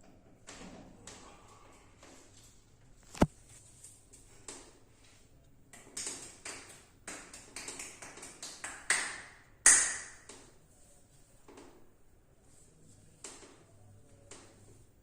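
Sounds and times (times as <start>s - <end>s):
hand taps and slaps on body: 5.7s - 10.5s.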